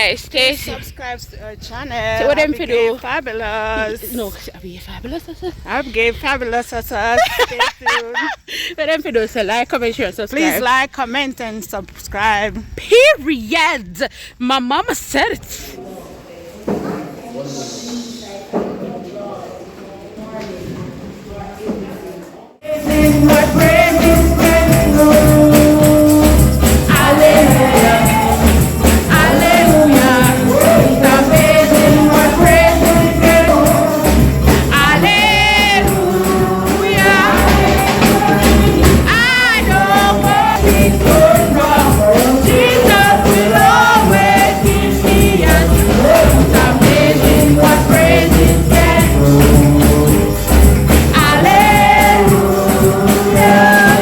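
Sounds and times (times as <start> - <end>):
band accompaniment: 22.6 - 54.0
congregation and choir singing: 22.6 - 54.0
strong bass beat: 22.6 - 54.0
tambourine: 22.6 - 54.0.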